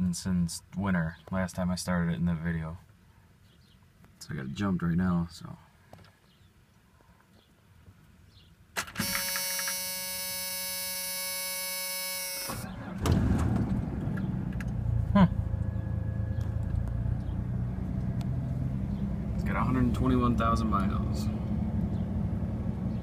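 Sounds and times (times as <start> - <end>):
starter motor whine: 9.0 - 14.7.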